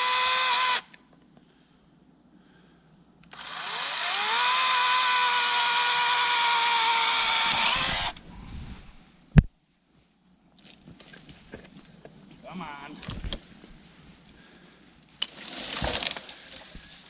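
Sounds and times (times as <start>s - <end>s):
electric chainsaw motor whining: 0.0s - 0.9s, 3.3s - 8.2s.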